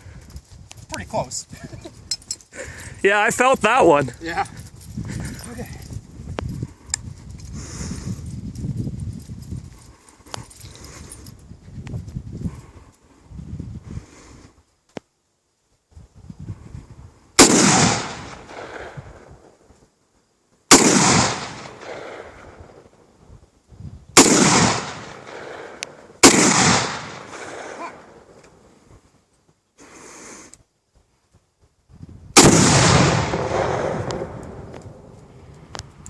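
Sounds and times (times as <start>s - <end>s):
rifle shots with echo: 17.4s - 19.0s, 20.7s - 22.6s, 24.2s - 28.2s, 32.4s - 35.1s.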